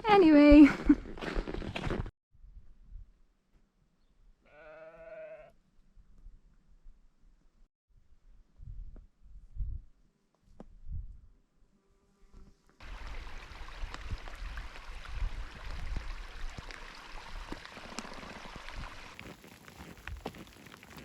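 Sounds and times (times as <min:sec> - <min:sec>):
rain falling steadily: 0:12.8 - 0:19.2.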